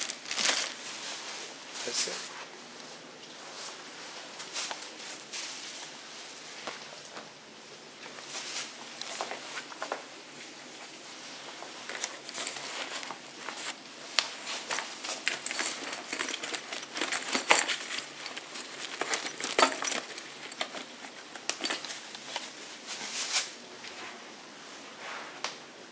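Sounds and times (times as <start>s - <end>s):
packaging crinkling and rustling: 0.0s - 2.3s, 8.1s - 23.6s.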